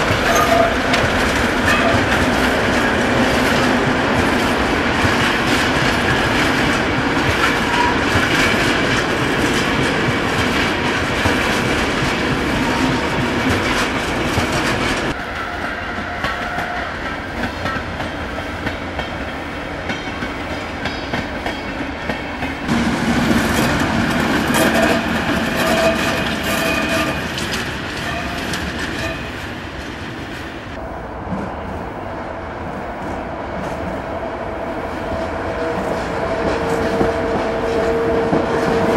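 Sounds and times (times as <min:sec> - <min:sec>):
train wheels clattering over rails: 0:00.0 - 0:31.5, 0:35.1 - 0:38.9.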